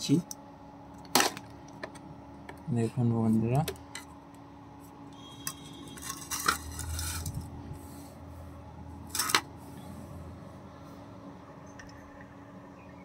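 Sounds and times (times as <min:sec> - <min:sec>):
hard objects clattering on work surface: 0:05.4 - 0:07.4.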